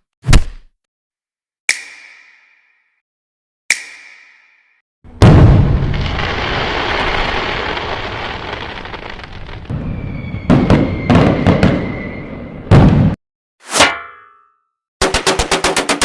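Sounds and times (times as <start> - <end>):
explosion blast: 5.1 - 13.2
fireworks cracking and popping: 5.8 - 9.7.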